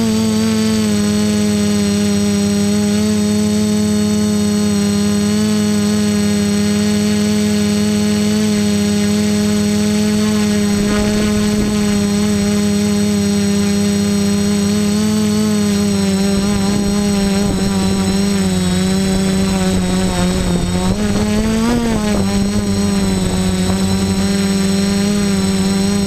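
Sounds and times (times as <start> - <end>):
quadcopter motors whining: 0.0 - 26.0
wind buffeting: 16.2 - 25.7.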